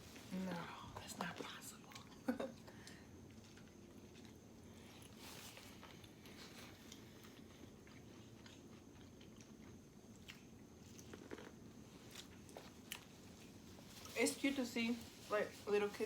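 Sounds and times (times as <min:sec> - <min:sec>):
chewing and biting food: 0:03.2 - 0:13.6.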